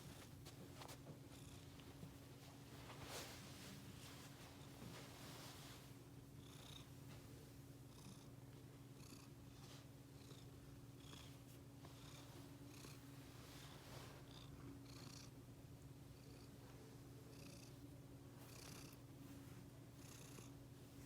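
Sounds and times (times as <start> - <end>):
cat purring: 7.9 - 15.4, 17.2 - 17.8, 18.4 - 21.0.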